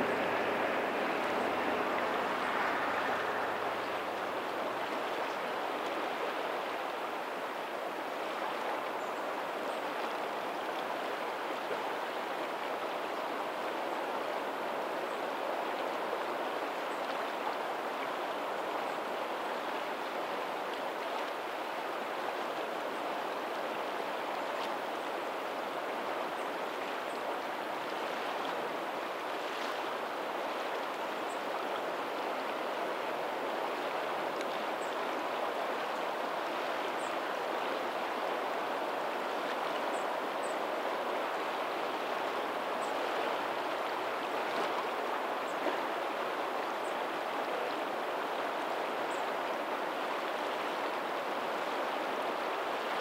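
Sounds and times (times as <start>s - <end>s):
water rushing over pebbles: 0.0s - 14.9s
faint ocean surf: 0.0s - 53.0s.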